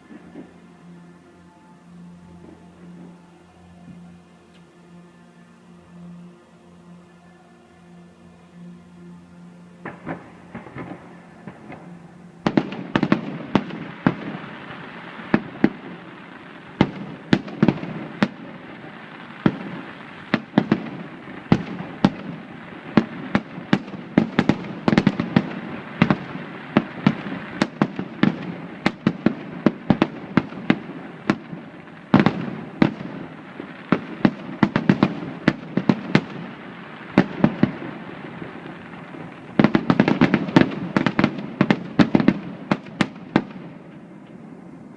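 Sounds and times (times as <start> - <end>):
rumbling crackle of fireworks: 0.0 - 4.8, 8.7 - 44.9
fireworks bangs: 9.8 - 44.9.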